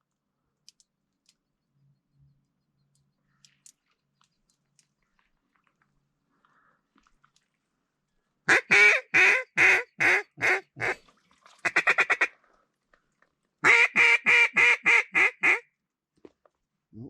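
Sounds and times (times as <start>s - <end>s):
duck call quacking: 8.5s - 11.0s, 11.6s - 12.3s, 13.6s - 15.6s.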